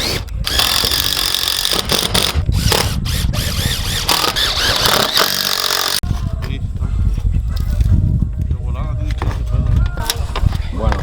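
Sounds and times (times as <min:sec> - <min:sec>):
power tool squealing: 0:00.0 - 0:06.0.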